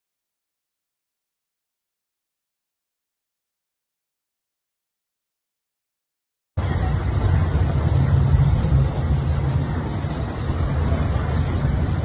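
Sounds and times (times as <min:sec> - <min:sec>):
rushing floodwater roar: 0:06.6 - 0:12.0
wind on microphone: 0:06.6 - 0:12.0.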